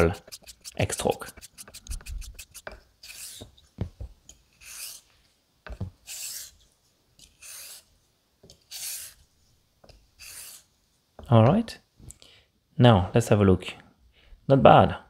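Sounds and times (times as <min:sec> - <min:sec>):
razor blade scraping on whetstone: 0:00.0 - 0:03.5, 0:04.6 - 0:05.1, 0:06.0 - 0:06.6, 0:07.2 - 0:07.9, 0:08.7 - 0:09.2, 0:10.2 - 0:10.7.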